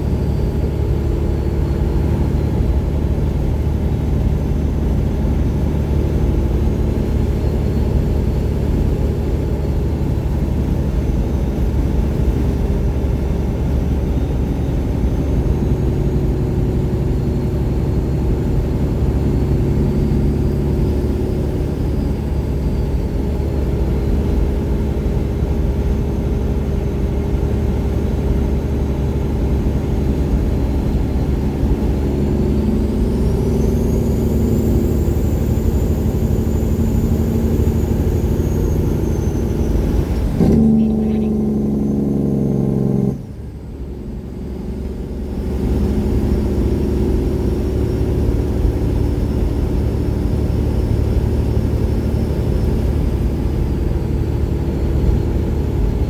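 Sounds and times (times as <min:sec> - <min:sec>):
diesel truck engine running: 0:00.0 - 0:56.0
turbocharger whistle: 0:30.4 - 0:43.8.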